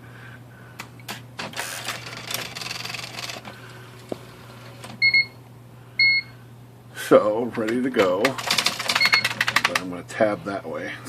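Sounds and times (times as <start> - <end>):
typewriter mechanical rattling and whirring: 1.1 - 5.0, 7.6 - 10.0
typewriter clicks: 7.6 - 9.9.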